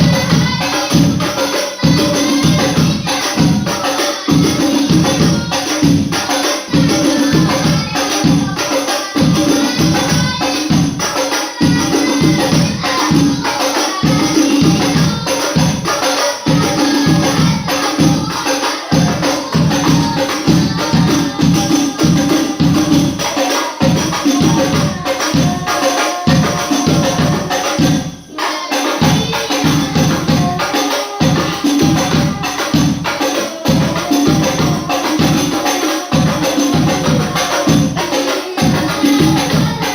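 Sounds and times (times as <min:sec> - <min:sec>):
frame drums beating: 0:00.0 - 0:39.9
person singing: 0:00.0 - 0:39.9.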